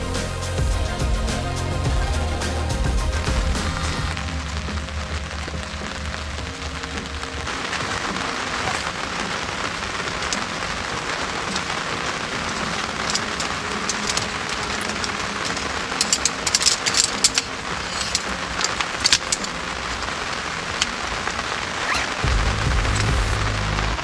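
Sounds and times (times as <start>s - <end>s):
steady rain falling: 0.0s - 24.0s
raindrops ticking: 5.5s - 24.0s.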